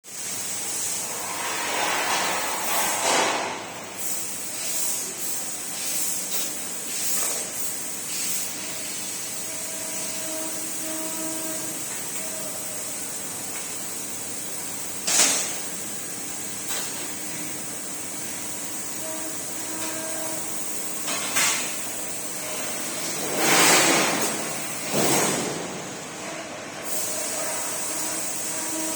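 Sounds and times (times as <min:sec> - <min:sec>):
steady machinery hiss: 0:00.0 - 0:28.9
loud rushing hisses: 0:00.1 - 0:05.4.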